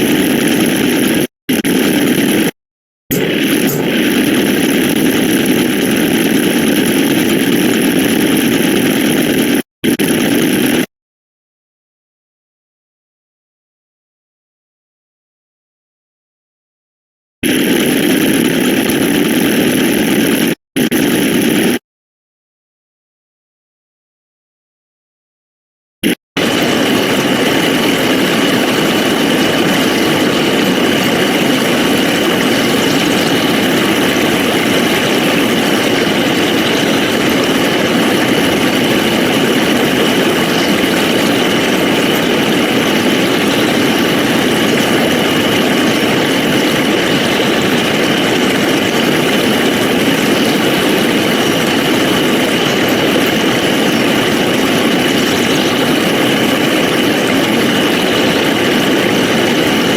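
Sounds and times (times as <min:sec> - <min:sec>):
engine-like drone with high whine: 0:03.1 - 0:10.9, 0:26.1 - 0:59.9.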